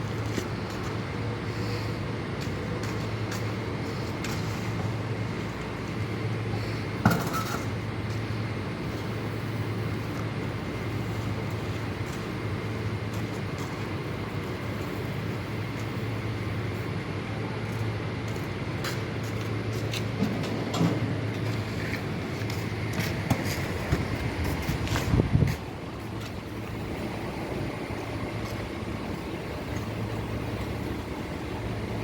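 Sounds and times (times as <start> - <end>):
paving machinery engine hum: 0.0 - 32.0.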